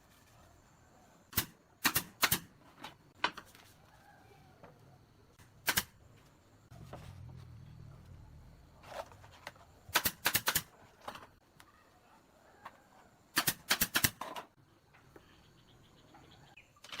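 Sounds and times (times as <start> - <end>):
low hum: 6.6 - 9.2.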